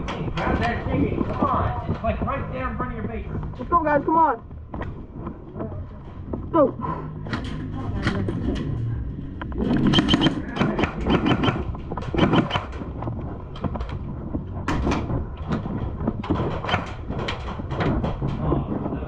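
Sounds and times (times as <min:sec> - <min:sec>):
steady low rumble: 0:00.0 - 0:19.0
sharp clicks and knocks: 0:07.2 - 0:19.0.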